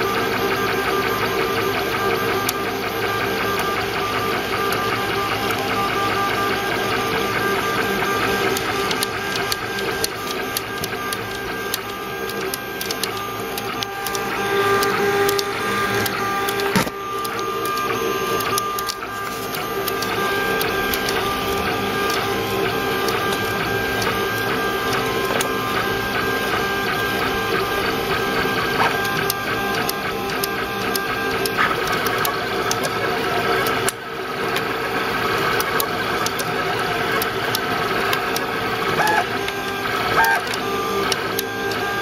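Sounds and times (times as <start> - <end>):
stepper motors whining: 0.0 - 42.0
small ticks: 8.3 - 22.3, 28.8 - 33.0.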